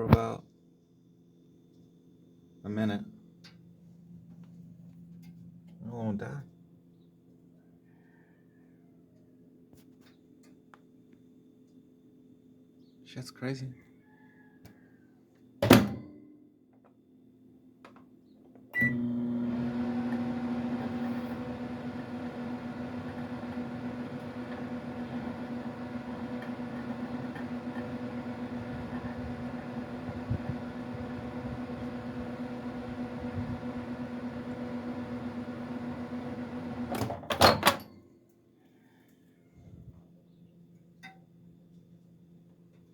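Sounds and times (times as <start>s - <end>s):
microwave humming: 18.7s - 38.0s
microwave beep: 18.8s - 37.8s.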